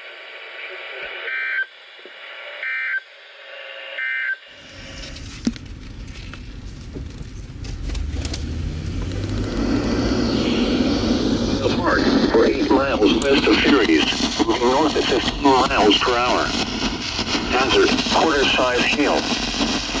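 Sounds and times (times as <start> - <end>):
data tone bursts from radio: 0.0 - 4.6, 10.4 - 20.0
vehicle road and engine rumble: 4.6 - 15.8.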